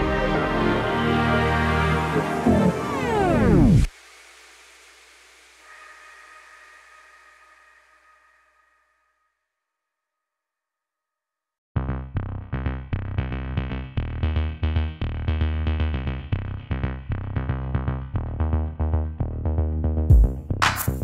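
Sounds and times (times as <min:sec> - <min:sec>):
electronic music with drum machine: 0:02.1 - 0:03.9, 0:20.1 - 0:21.0.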